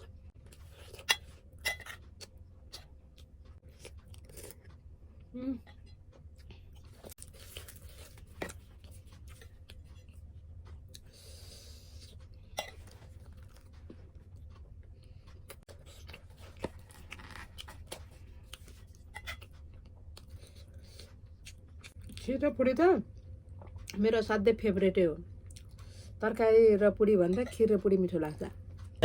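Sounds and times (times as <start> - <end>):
person chewing food: 0.0 - 22.2, 25.3 - 26.2.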